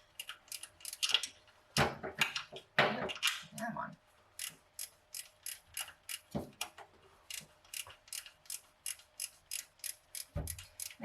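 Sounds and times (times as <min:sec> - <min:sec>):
socket ratchet clicking: 0:00.2 - 0:01.4, 0:04.4 - 0:06.3, 0:07.3 - 0:11.0.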